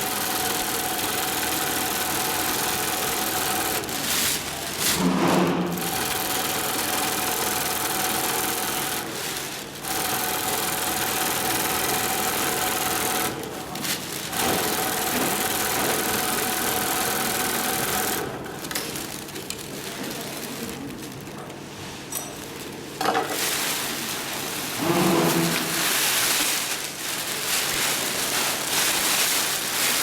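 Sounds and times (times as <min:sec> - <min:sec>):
sewing machine whining: 0:00.0 - 0:18.6.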